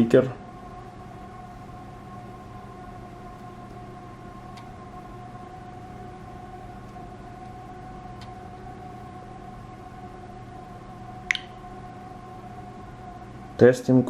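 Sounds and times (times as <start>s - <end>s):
faint ticks: 4.5s - 4.7s.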